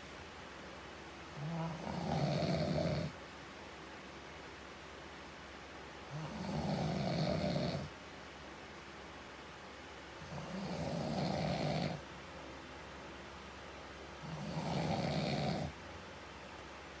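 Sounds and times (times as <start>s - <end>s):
man snoring: 1.4s - 3.2s, 6.2s - 7.9s, 10.3s - 12.0s, 14.3s - 15.7s.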